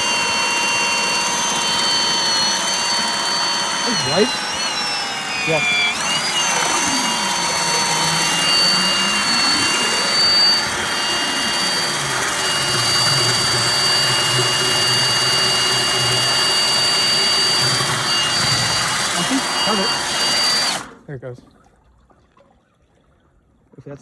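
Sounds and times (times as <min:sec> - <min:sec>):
cordless drill motor whine: 0:00.0 - 0:21.0
drain cable spinning: 0:00.0 - 0:21.0.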